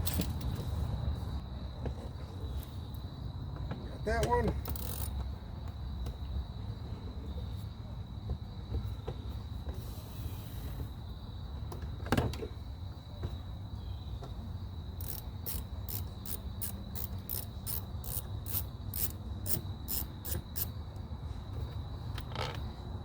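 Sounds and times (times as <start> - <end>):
socket ratchet clicking: 4.6 - 5.2, 15.0 - 20.7.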